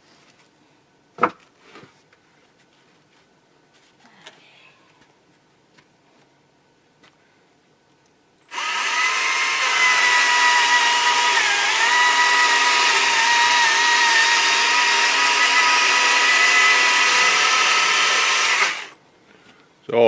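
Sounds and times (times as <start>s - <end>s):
battery chainsaw whining: 8.5s - 19.0s.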